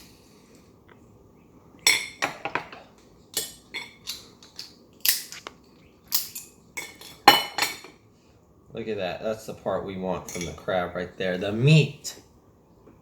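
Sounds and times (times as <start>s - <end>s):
crab shell cracking: 4.0s - 6.5s.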